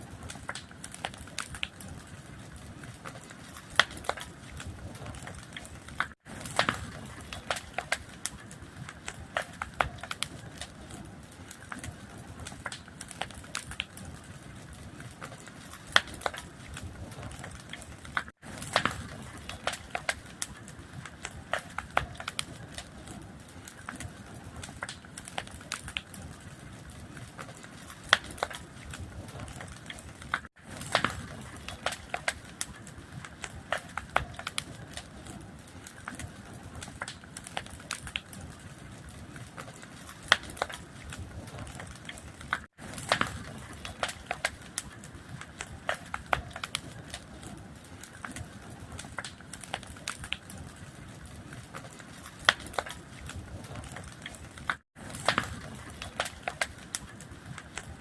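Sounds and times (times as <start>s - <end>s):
wood fire crackling and popping: 0.0s - 58.0s.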